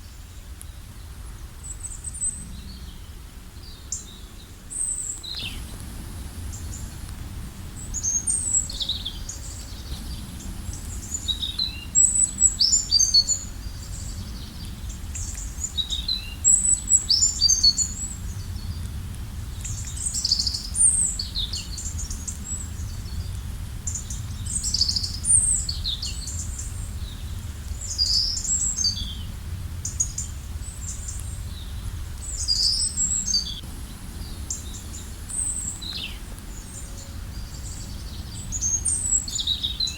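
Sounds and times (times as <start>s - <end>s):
songbirds singing: 0.0s - 39.9s
steady low rumble: 5.4s - 15.7s.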